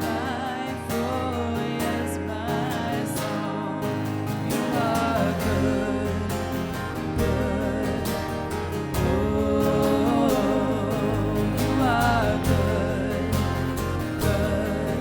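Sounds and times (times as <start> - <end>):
acoustic guitar: 0.0 - 15.0
person singing: 0.0 - 15.0
band playing slow gospel song: 3.5 - 15.0.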